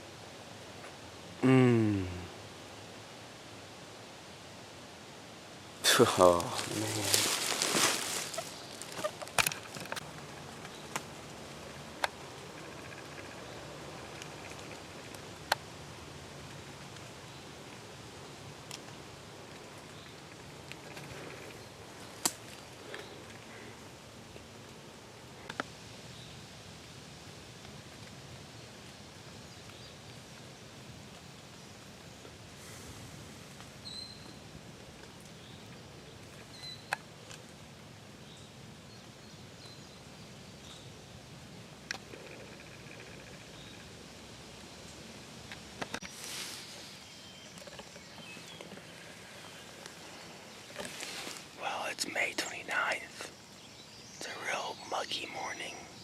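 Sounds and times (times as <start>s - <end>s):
outdoor background hiss: 0.0s - 56.0s
faint high bird calls: 6.7s - 9.8s, 33.8s - 34.4s, 35.3s - 37.0s.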